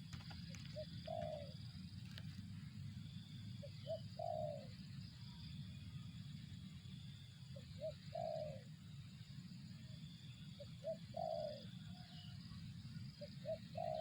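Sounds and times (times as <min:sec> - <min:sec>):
dove cooing: 0:00.0 - 0:02.4, 0:03.6 - 0:05.0, 0:07.6 - 0:08.8, 0:10.6 - 0:12.2, 0:13.2 - 0:14.0
steady low hum: 0:00.0 - 0:14.0.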